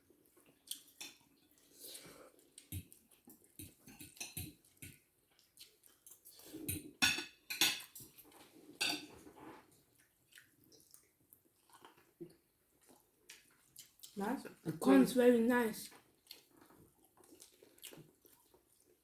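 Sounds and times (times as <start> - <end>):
chewing: 0.2 - 7.0, 7.8 - 14.6, 15.8 - 19.0
cutlery clinking on plates: 3.6 - 5.0, 6.5 - 9.4.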